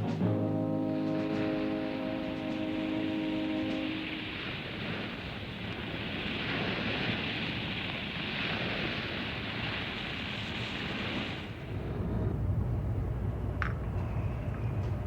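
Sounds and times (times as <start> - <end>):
orchestral chord: 0.0 - 4.6
sea waves: 0.0 - 15.0
wind: 0.0 - 15.0.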